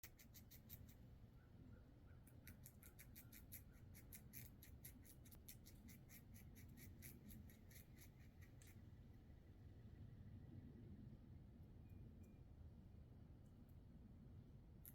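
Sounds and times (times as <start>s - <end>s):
squirrel gnawing a nut shell: 0.0s - 1.1s, 2.2s - 9.3s.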